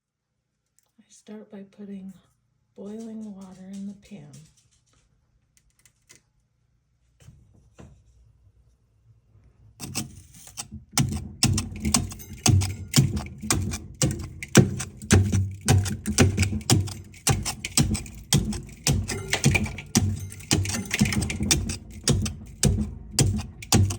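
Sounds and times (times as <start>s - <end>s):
spoon chipping ice: 9.8s - 23.9s.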